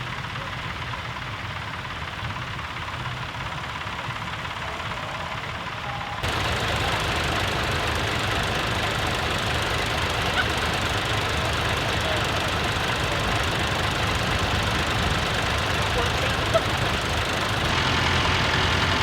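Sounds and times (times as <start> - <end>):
tractor engine running: 6.2 - 19.0.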